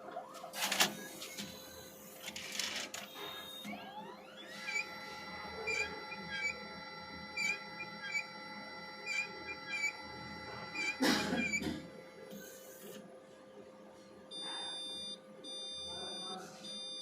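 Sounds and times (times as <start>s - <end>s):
mechanism squeaks and clicks: 0.1s - 4.9s, 9.0s - 9.9s
drive motor whine: 0.8s - 13.1s.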